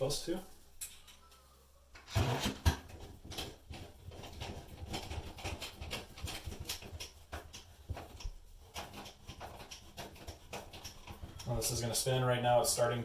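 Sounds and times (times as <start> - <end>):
screwdriver clicking and scraping: 2.0 - 11.6.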